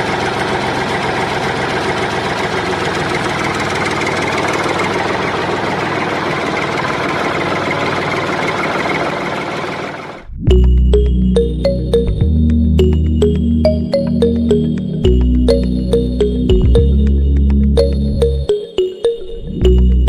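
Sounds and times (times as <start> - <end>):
engine idling: 0.0 - 10.3.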